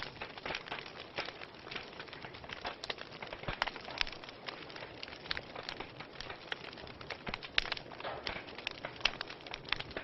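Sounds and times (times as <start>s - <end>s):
wood fire crackling and popping: 0.0s - 10.0s.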